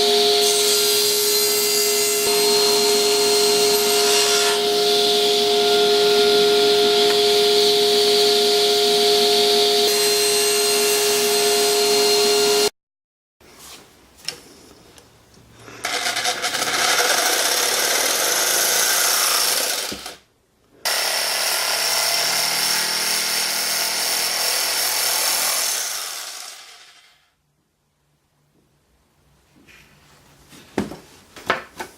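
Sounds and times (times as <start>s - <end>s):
power saw cutting wood: 0.0s - 12.7s, 15.8s - 20.2s, 20.9s - 27.2s.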